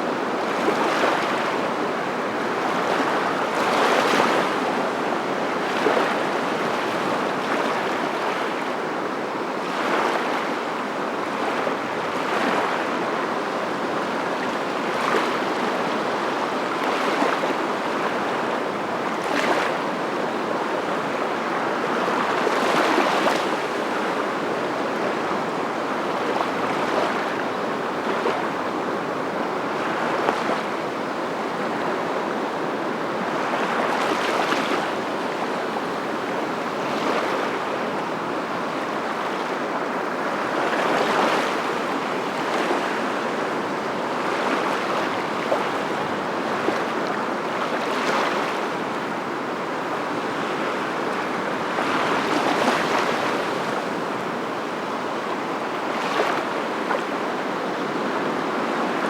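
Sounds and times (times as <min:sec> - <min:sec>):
ocean waves breaking: 0:31.3 - 0:59.0.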